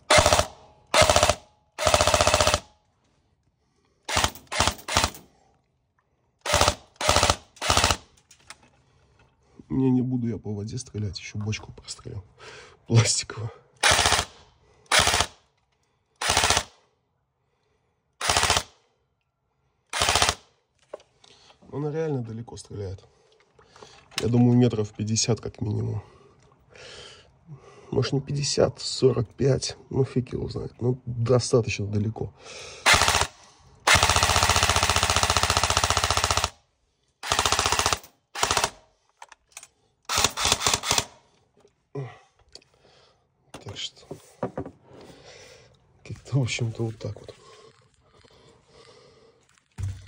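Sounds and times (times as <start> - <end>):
airsoft rifle full-auto bursts: 0.0 - 2.7, 4.1 - 5.2, 6.4 - 8.2, 13.8 - 15.4, 16.2 - 16.8, 18.2 - 18.8, 19.9 - 20.5, 32.9 - 36.6, 37.2 - 38.8, 40.1 - 41.2.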